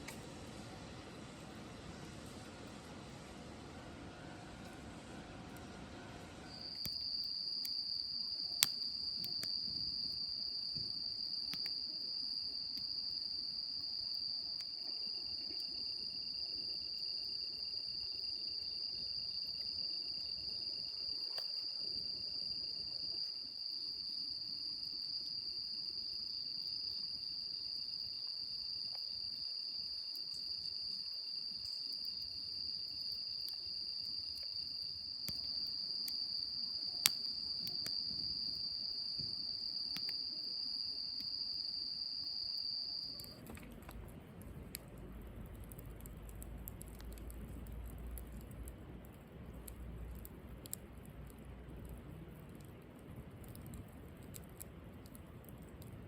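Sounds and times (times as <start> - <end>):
campfire crackling: 0.0 - 4.8, 5.5 - 10.6, 30.1 - 41.5, 43.1 - 56.0
faint pulsing insect trill: 6.4 - 56.0.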